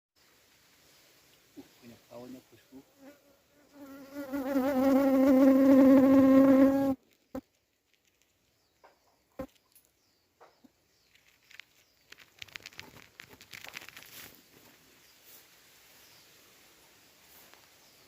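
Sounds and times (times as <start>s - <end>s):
flying insect buzzing: 2.8s - 7.4s
faint rustling: 7.0s - 18.0s.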